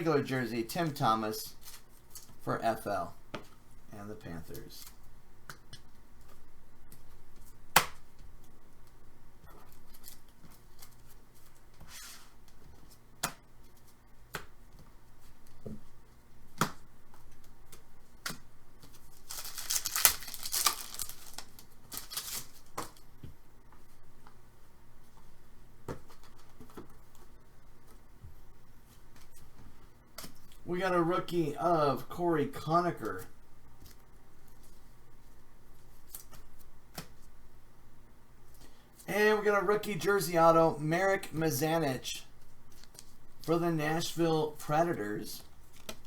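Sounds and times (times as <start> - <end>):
wrapper crinkling and tearing: 19.1 - 22.8.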